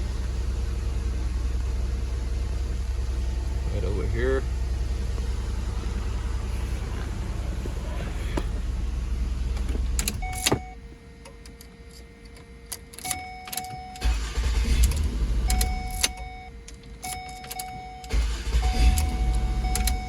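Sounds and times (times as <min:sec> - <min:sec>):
low rumble: 0:00.0 - 0:11.0
car engine idling: 0:00.0 - 0:13.0, 0:13.6 - 0:20.0
electronic warning chime: 0:10.2 - 0:10.8, 0:15.5 - 0:20.0.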